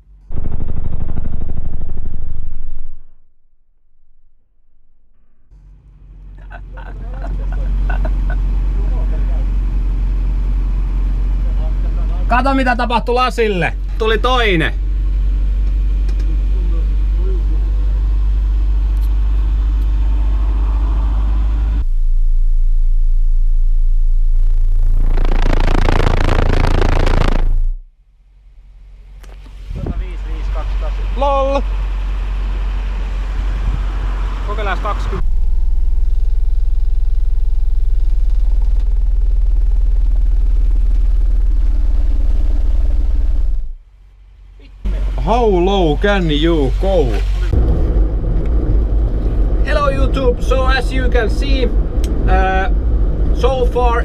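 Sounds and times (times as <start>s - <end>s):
subwoofers playing deep test tone: 0.0s - 5.5s, 13.2s - 43.8s, 44.9s - 54.0s
loud rattling buzz: 0.0s - 6.1s, 17.8s - 31.0s, 35.2s - 44.3s.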